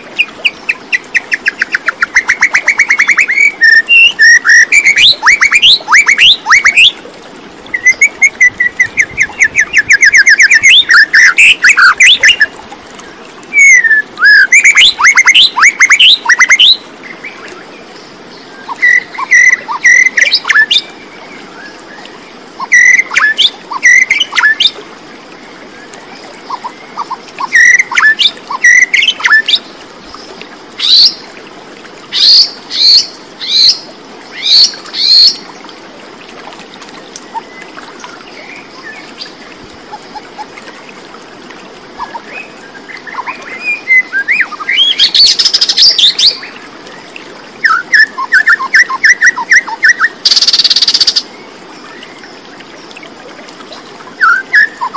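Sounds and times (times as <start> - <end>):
bird singing trills: 0.2 - 7.0, 13.5 - 16.8, 47.6 - 51.3.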